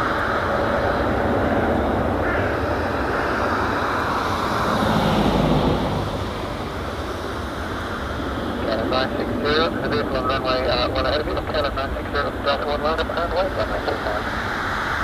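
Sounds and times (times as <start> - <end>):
jet engines at takeoff power: 0.0 - 15.0.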